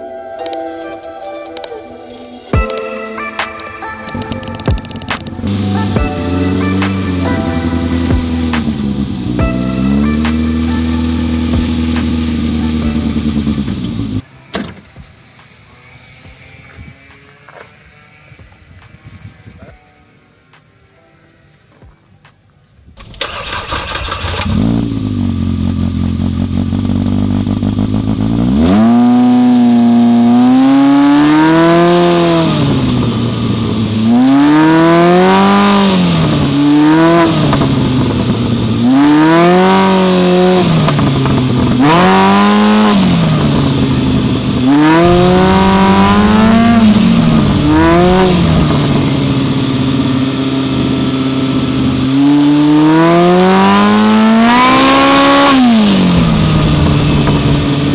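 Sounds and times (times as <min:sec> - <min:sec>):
engine idling and revving: 0:04.1 - 0:14.2, 0:23.0 - 0:57.9.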